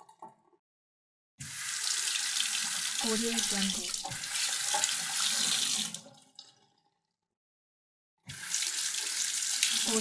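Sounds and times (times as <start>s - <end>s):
tap water running into sink: 1.4s - 6.6s, 8.3s - 10.0s.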